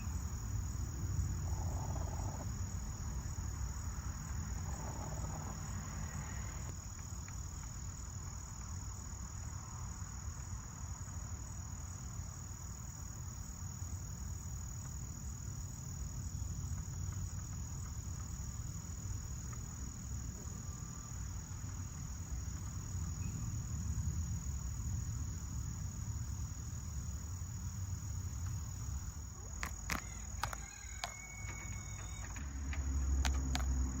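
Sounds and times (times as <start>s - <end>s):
insect chorus: 0.0s - 34.0s
sharp clicks: 29.6s - 31.2s.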